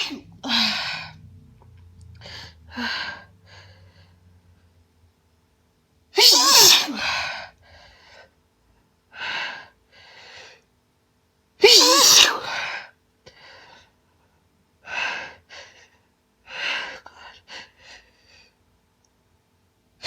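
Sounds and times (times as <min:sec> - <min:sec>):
woman sneezing: 0:00.0 - 0:00.3, 0:06.2 - 0:07.2, 0:11.6 - 0:12.6.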